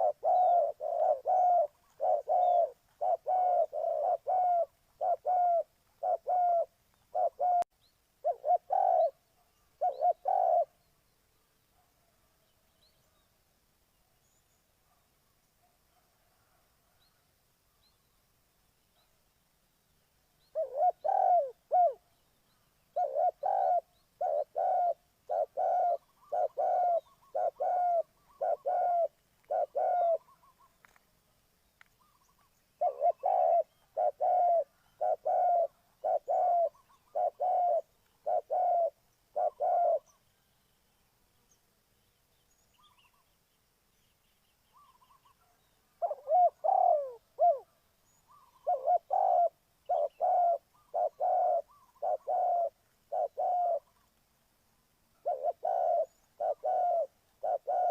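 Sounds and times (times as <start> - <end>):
dove cooing: 0.0 - 10.8, 20.4 - 22.2, 22.9 - 31.0, 32.0 - 40.2, 44.8 - 54.1, 55.2 - 57.9.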